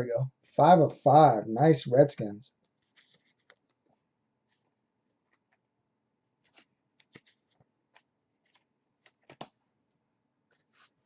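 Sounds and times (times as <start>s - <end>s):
trading cards rustling and clicking: 2.7s - 5.6s, 6.4s - 9.6s.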